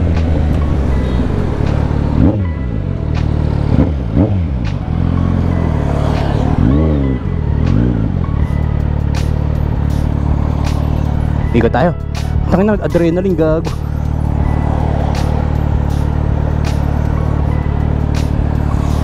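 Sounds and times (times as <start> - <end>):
motorcycle engine revving: 0.0 - 11.6
background music: 0.0 - 19.0.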